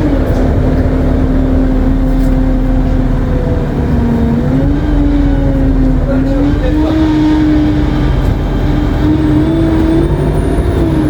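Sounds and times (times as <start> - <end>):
bus engine rumbling: 0.0 - 11.0
turbocharger whine: 0.0 - 11.0.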